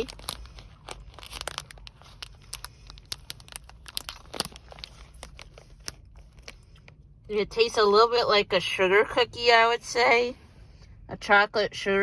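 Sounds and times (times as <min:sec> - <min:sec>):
candy being chewed: 0:00.0 - 0:07.2
low steady hum: 0:00.0 - 0:12.0.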